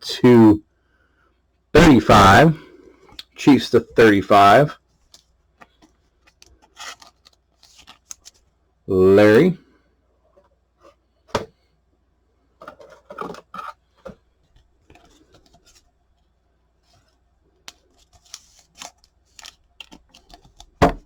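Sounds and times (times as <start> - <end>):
trading cards shuffling: 5.1 - 8.5, 16.9 - 21.0.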